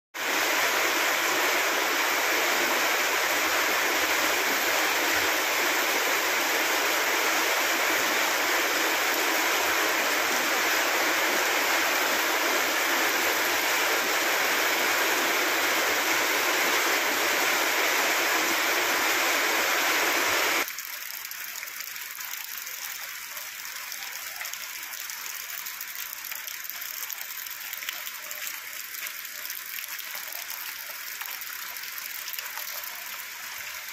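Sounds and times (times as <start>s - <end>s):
heavy rain: 0.2s - 20.8s
running water: 0.2s - 33.9s.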